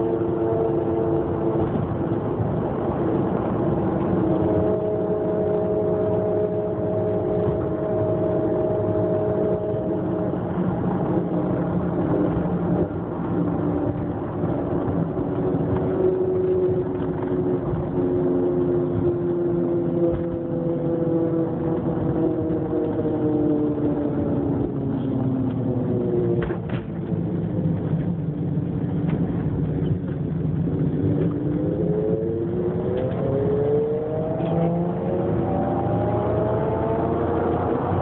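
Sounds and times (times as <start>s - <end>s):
vehicle engine rumble: 0.0s - 38.0s
vehicle whine: 0.0s - 38.0s.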